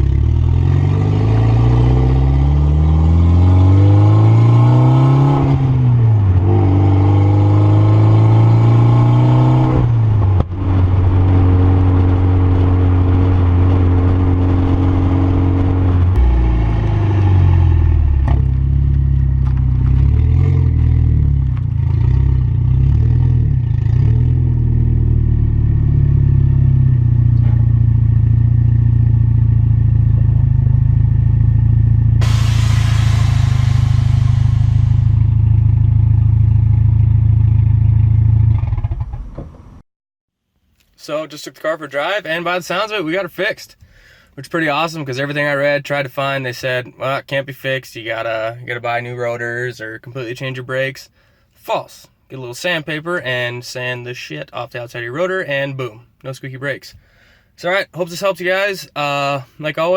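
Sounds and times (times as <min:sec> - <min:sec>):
car engine revving: 0:00.0 - 0:39.1.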